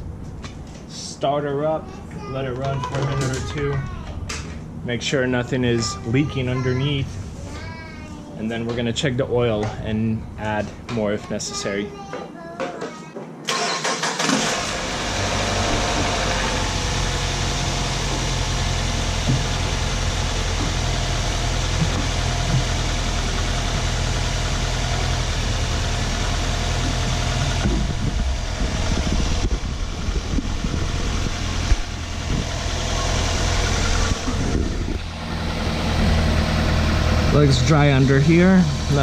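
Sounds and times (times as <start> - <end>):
car engine starting and idling: 13.5 - 39.0.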